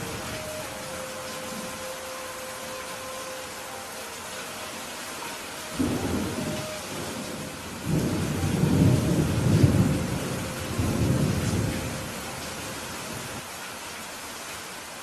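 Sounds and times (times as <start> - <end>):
steady rain hissing: 0.0 - 15.0
thunder rumbling: 5.7 - 13.4.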